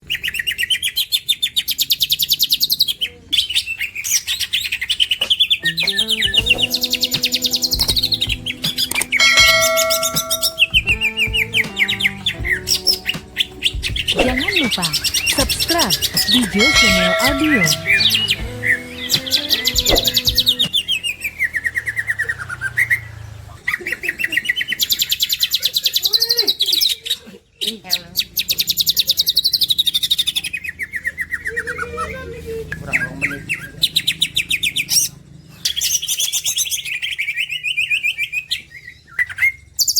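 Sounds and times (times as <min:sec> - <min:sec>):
bird singing high chirps: 0:00.0 - 0:23.1
lower steady tones: 0:06.2 - 0:20.8.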